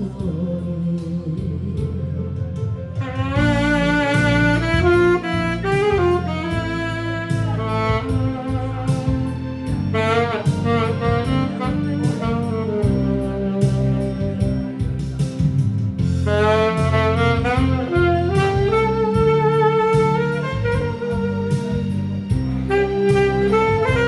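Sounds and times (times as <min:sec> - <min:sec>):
bass and steady beat: 0:00.0 - 0:24.0
saxophone melody: 0:02.9 - 0:15.2, 0:15.9 - 0:24.0.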